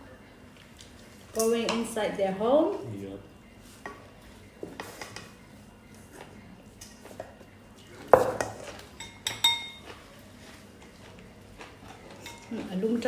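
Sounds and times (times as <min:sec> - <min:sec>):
cutlery clinking on plates: 0:08.1 - 0:10.0, 0:11.8 - 0:12.6.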